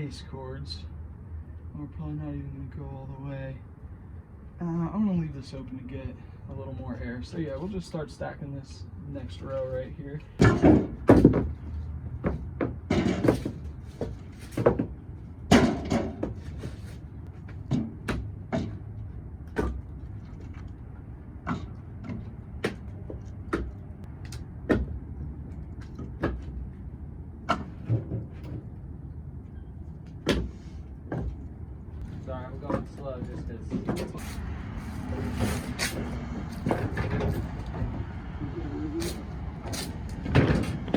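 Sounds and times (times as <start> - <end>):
logs knocking on woodpile: 10.4 - 11.6, 12.2 - 18.8, 19.5 - 20.6, 24.6 - 25.0, 30.2 - 31.4.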